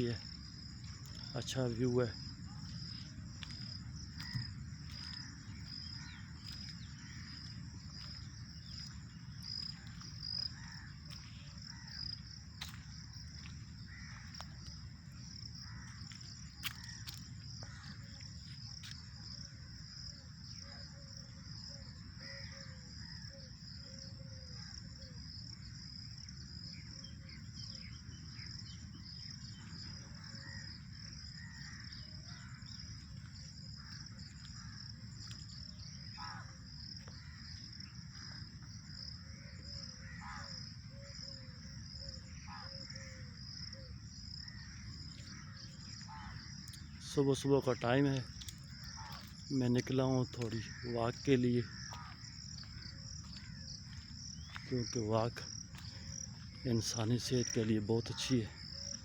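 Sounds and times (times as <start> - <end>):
insects chorus: 0.0 - 59.0
crow-like caws: 4.0 - 8.9, 9.5 - 12.8, 13.4 - 18.5, 21.7 - 25.1, 29.1 - 35.3, 35.9 - 41.4, 42.0 - 47.0, 48.6 - 49.5, 50.5 - 54.7
bird calls: 33.8 - 59.0.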